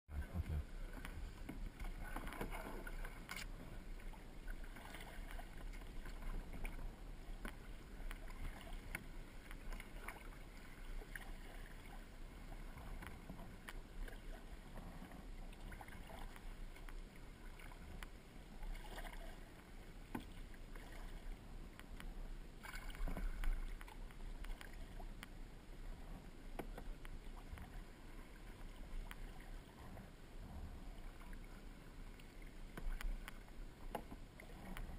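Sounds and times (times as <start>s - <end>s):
low rumble: 0.1s - 4.2s
kayak paddle splashing in water: 0.2s - 18.0s, 18.6s - 21.4s.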